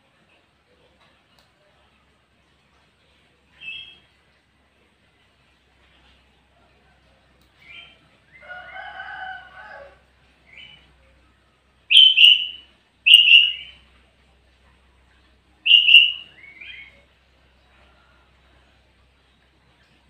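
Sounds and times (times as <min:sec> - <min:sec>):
bulbul singing: 0:03.5 - 0:04.1, 0:11.9 - 0:13.8, 0:15.6 - 0:17.1.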